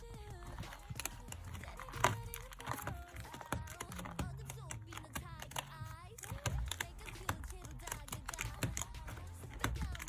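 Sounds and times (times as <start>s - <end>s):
packaging clicks and taps: 0.0s - 10.0s.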